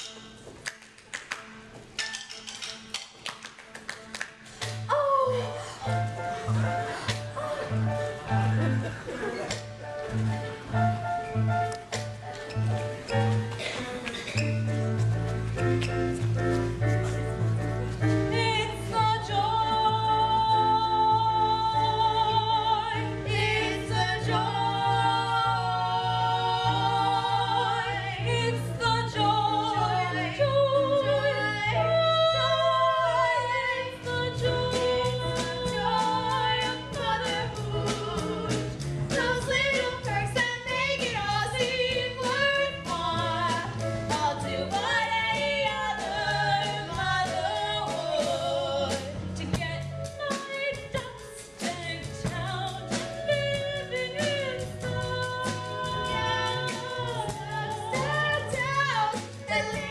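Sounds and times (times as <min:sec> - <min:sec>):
musical accompaniment: 0:00.0 - 0:59.9
voices singing: 0:18.7 - 0:31.0, 0:53.6 - 0:59.9.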